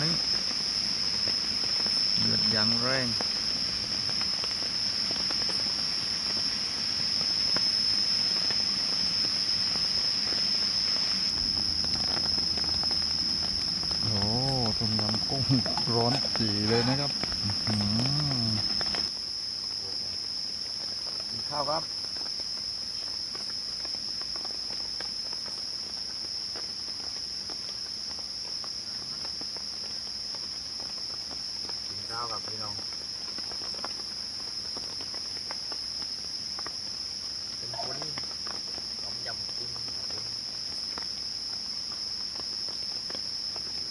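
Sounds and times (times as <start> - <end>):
soup boiling hard: 0.0 - 19.8
crickets trilling: 0.0 - 43.9
insects chorus: 0.0 - 43.9.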